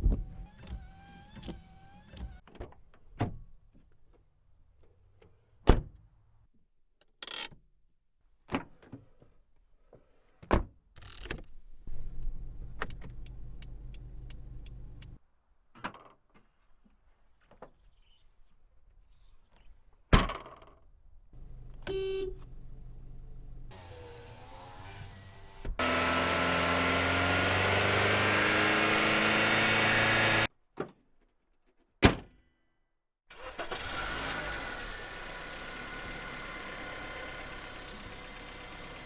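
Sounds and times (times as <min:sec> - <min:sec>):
power window motor whining: 0:00.0 - 0:02.4, 0:11.9 - 0:15.2, 0:21.4 - 0:30.5.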